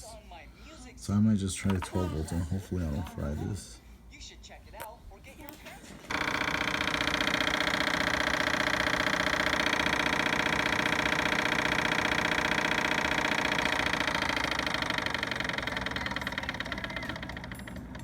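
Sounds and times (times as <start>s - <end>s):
electric motor whine: 6.1s - 18.0s.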